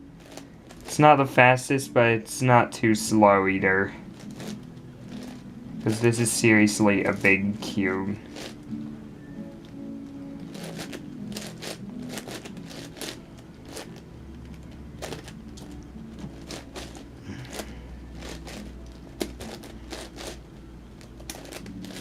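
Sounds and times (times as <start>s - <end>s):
puzzle cube clicking and scraping: 0.2s - 1.0s, 4.1s - 8.7s, 10.4s - 20.4s, 21.0s - 22.0s.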